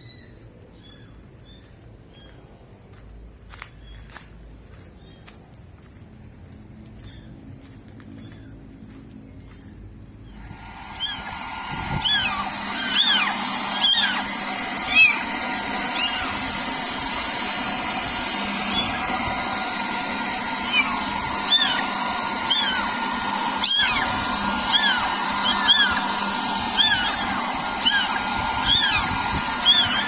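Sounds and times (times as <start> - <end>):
hairdryer whirring: 10.3 - 30.0
kittens mewing: 10.3 - 30.0.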